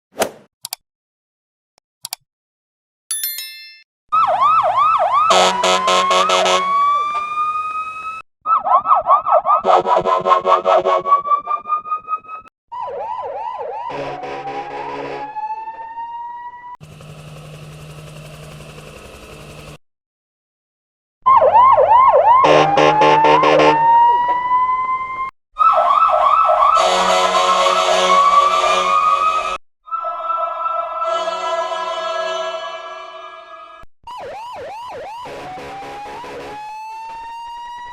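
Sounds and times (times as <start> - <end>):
siren yelping and wailing: 4.1 - 16.8, 21.3 - 33.0, 33.6 - 37.9.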